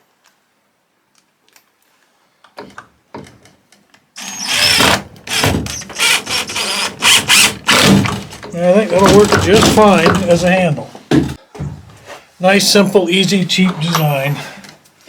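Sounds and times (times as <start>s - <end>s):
power drill driving screw: 4.2s - 8.5s.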